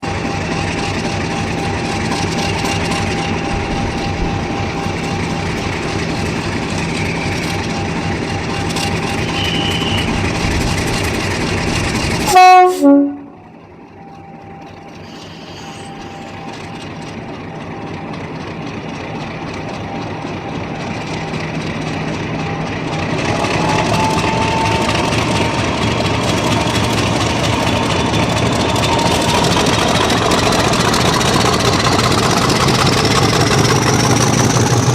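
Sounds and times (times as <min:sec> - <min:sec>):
diesel locomotive engines running: 0:00.0 - 0:34.9
loud train horn blasts: 0:09.2 - 0:10.2, 0:12.2 - 0:13.5, 0:23.5 - 0:26.0
rising engine whine: 0:15.7 - 0:34.9.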